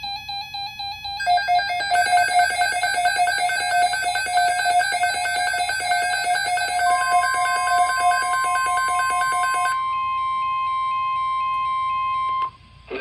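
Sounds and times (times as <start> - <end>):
rapid electronic alarm beeps: 0.0 - 9.8.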